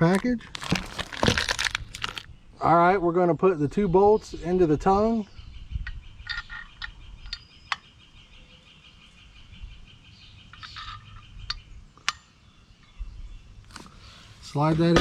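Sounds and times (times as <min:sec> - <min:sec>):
metal bolts clicking and tapping: 0:05.8 - 0:07.8, 0:10.5 - 0:12.3.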